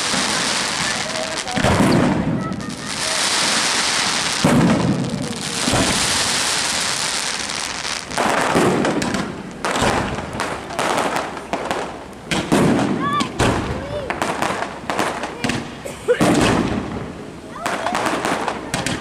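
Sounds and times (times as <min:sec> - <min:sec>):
fireworks booming: 0:00.0 - 0:19.0
fireworks crackling: 0:00.0 - 0:19.0.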